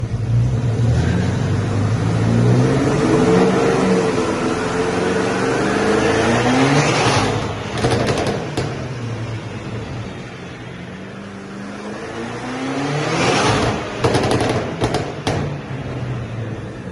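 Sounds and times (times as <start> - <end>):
car engine revving: 0.1 - 9.8, 11.1 - 16.9
exhaust crackles and pops: 7.6 - 9.0, 13.6 - 15.6.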